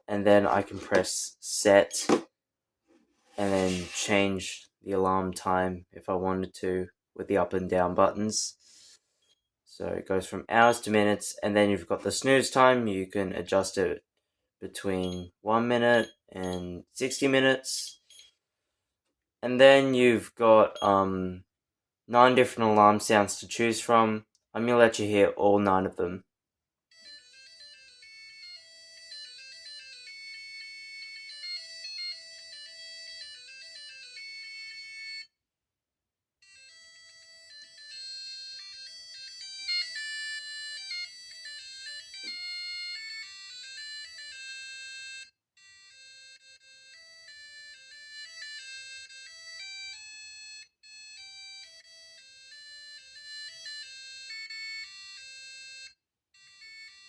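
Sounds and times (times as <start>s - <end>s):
alarm clock beeper tunes: 27.0s - 35.3s, 36.4s - 57.0s.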